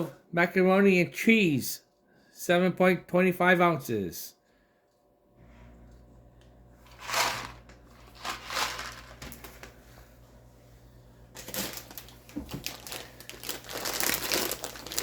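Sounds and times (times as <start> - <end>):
plastic packaging crinkling: 6.9 - 9.7, 11.3 - 15.0
packages knocking and rustling: 6.9 - 9.8, 11.3 - 15.0.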